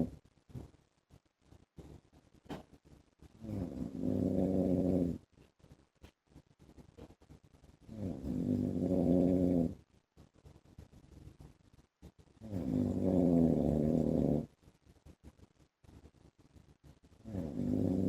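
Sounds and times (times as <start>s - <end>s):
man snoring: 3.4s - 5.2s, 7.9s - 9.8s, 12.5s - 14.5s, 17.3s - 18.0s.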